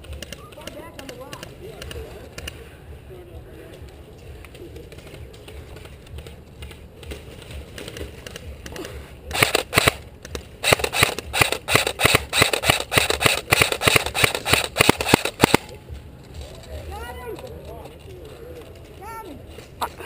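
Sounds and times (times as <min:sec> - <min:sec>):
airsoft gun shots: 0:09.3 - 0:10.0, 0:10.6 - 0:15.8.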